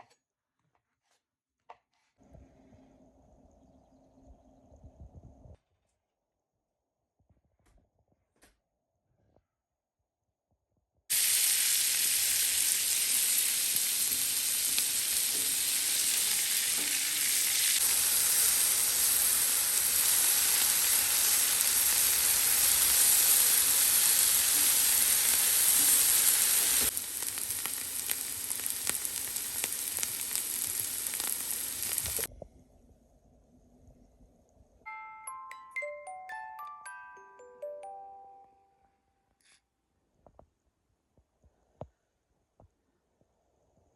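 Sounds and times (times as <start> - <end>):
food sizzling in a frying pan: 11.1 - 32.3.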